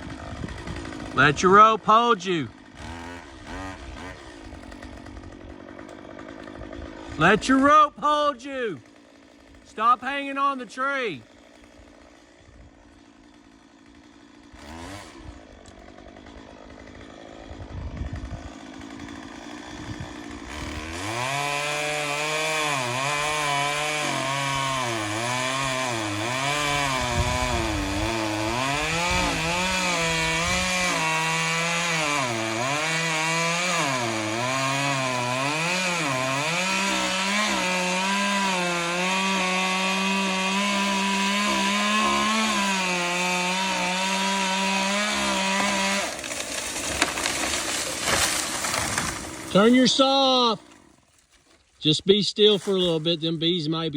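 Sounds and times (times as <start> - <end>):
chainsaw cutting wood: 0.0 - 53.8.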